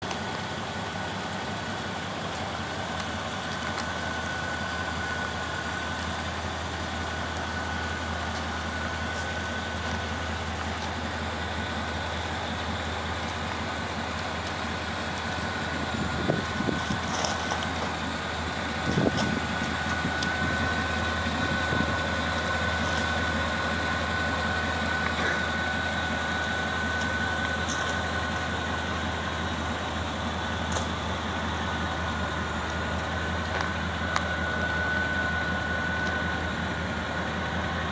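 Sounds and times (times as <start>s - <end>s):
pickup engine idling: 0.0s - 37.9s
thin steady whine: 0.0s - 37.9s
thin high whine: 30.7s - 37.9s.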